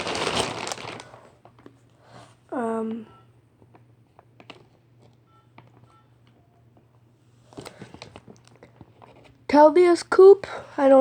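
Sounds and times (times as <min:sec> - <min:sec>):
packaging clicks and rustles: 0:00.0 - 0:01.8, 0:03.7 - 0:06.4, 0:07.5 - 0:09.3
low steady hum: 0:00.0 - 0:11.0.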